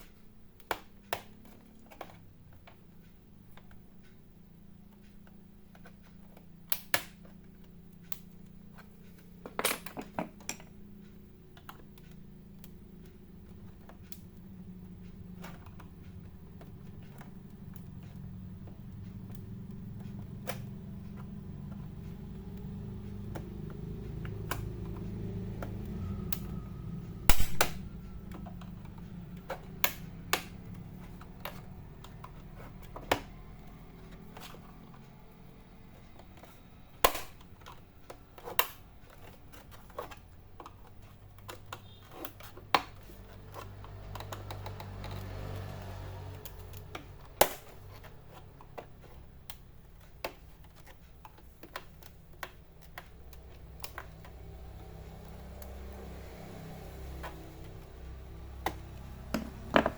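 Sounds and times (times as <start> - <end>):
handling noise: 19.4 - 59.9
plastic clips snapping loose: 27.3 - 34.7, 36.1 - 45.3, 46.3 - 55.8.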